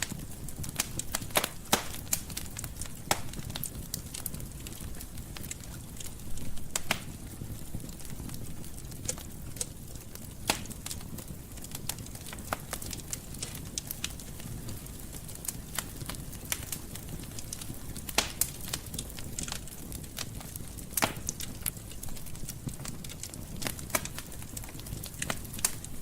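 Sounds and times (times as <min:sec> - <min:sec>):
fire crackles and pops: 0:00.0 - 0:26.0
low rumble of flame: 0:00.0 - 0:26.0.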